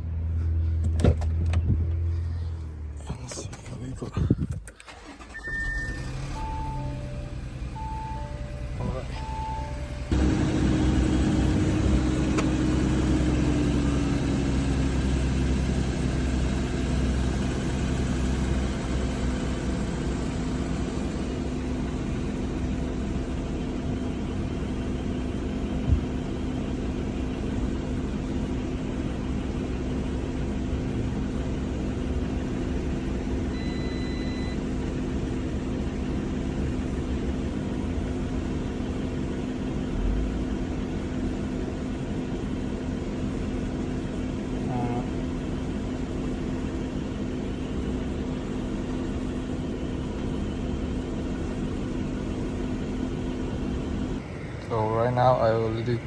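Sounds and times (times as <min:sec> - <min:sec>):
car engine idling: 0:00.0 - 0:56.0
short beep: 0:05.2 - 0:10.2, 0:33.5 - 0:34.6.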